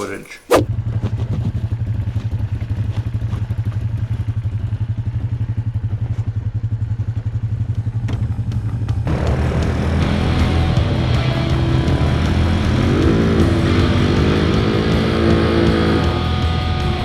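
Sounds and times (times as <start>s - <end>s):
music: 9.1s - 17.0s.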